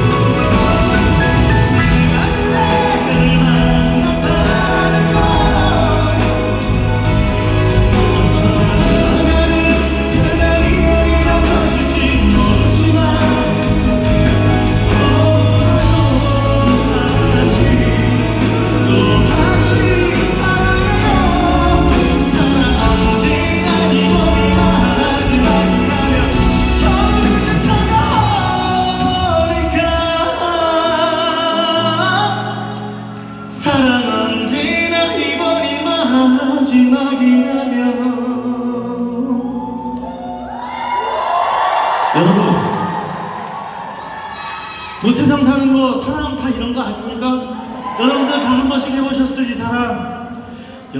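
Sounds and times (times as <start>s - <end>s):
person singing: 0.0s - 40.5s
live band playing pop ballad: 0.0s - 43.6s.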